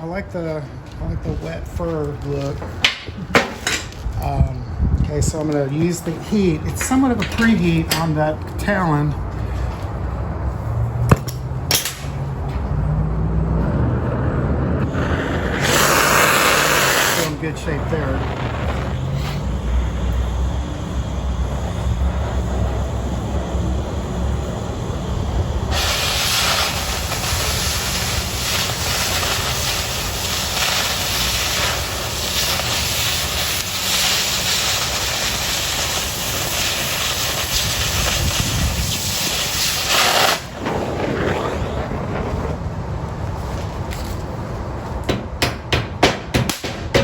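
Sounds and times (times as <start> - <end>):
torch flame rumbling: 1.1 - 45.1
cutting torch oxygen hissing: 14.8 - 43.1.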